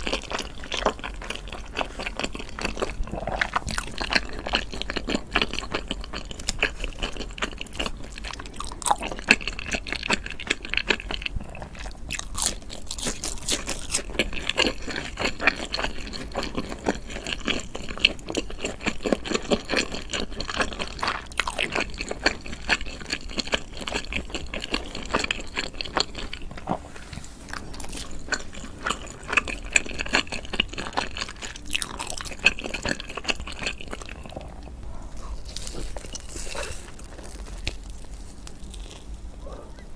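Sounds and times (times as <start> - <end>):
person biting and chewing: 0.0 - 17.5, 27.5 - 39.5.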